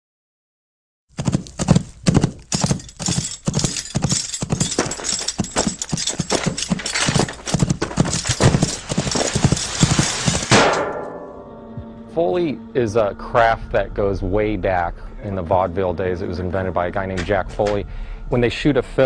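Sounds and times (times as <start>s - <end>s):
horse hoofbeats: 1.1s - 10.8s.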